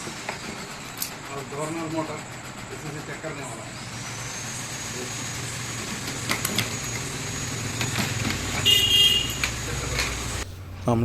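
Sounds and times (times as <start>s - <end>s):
steady low hum: 0.0s - 11.0s
short high horn-like beep: 8.6s - 9.5s.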